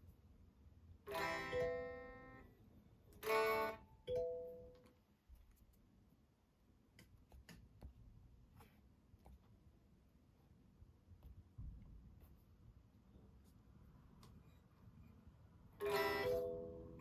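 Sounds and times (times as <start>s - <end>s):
guitar chord strummed: 1.1s - 2.4s.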